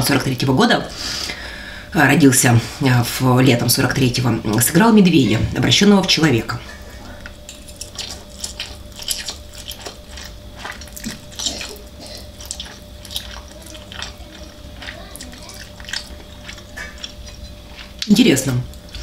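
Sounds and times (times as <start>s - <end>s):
faint steady hum: 0.0s - 19.0s
noodles being chewed and slurped: 6.7s - 19.0s.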